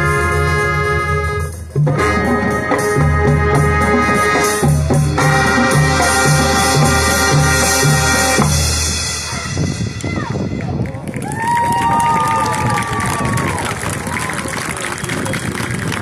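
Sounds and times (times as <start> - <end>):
marching band brass chords: 0.0 - 11.0
bass drum beat: 0.0 - 11.6.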